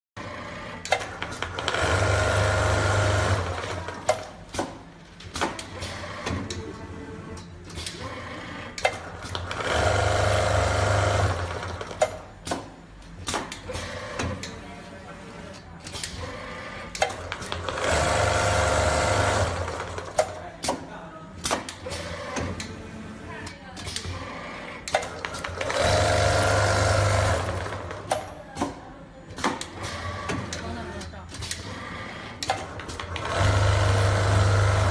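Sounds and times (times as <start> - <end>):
sewing machine stitching: 0.6 - 4.2, 8.2 - 12.2, 16.0 - 20.4, 24.8 - 28.2, 31.5 - 34.9.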